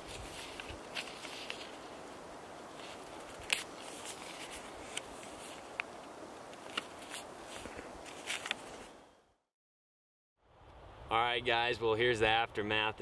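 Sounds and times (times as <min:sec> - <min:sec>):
steady hiss: 0:00.0 - 0:09.0.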